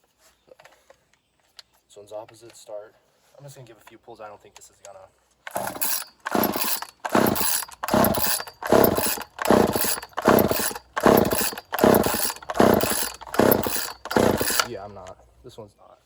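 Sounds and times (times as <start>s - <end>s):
chainsaw rope pulls: 5.5s - 15.1s
chainsaw engine cranking: 5.5s - 15.2s.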